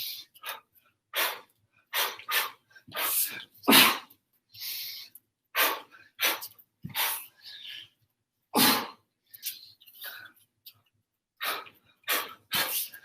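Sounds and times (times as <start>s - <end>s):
sharp forceful exhalations: 1.2s - 7.9s, 11.4s - 13.0s.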